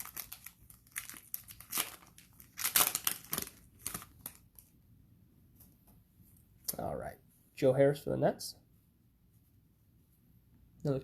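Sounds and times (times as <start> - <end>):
wrapper crinkling: 0.0 - 4.7.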